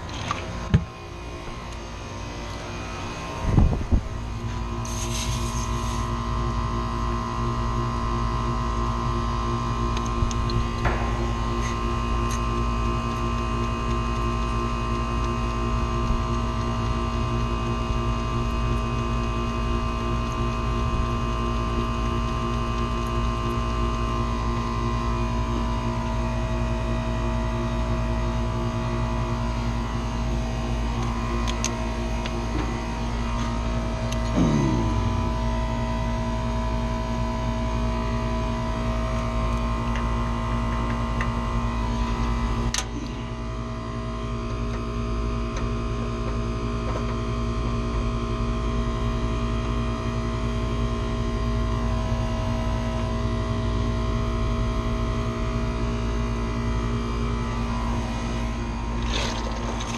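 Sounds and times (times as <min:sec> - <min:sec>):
machine humming: 0:00.0 - 0:14.9, 0:17.6 - 0:40.2
thump: 0:10.8 - 0:11.2.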